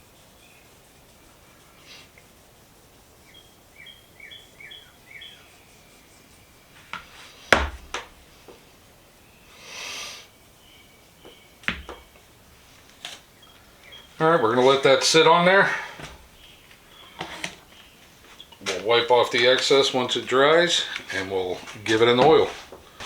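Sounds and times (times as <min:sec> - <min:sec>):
small bird chirping: 0:03.2 - 0:06.8, 0:09.2 - 0:12.2, 0:13.2 - 0:15.6, 0:16.2 - 0:21.9
hard object knocking on work surface: 0:07.6 - 0:08.1, 0:11.7 - 0:12.1
short hiss: 0:09.6 - 0:10.3.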